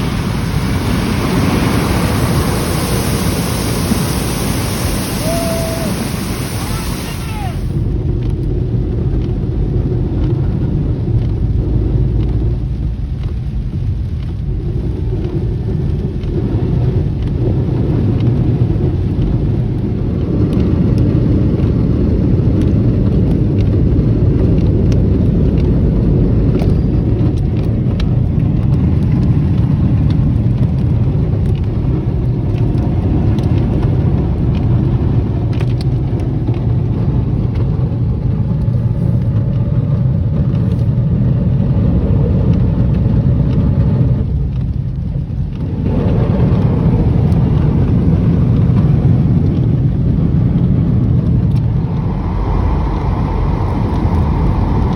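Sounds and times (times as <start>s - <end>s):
car road and engine rumble: 0.0s - 54.9s.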